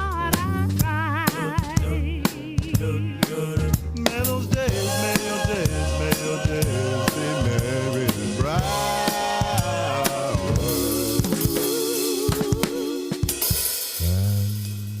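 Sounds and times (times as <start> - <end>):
song with drum kit beat: 0.0 - 15.0
gliding melody line: 4.7 - 13.1.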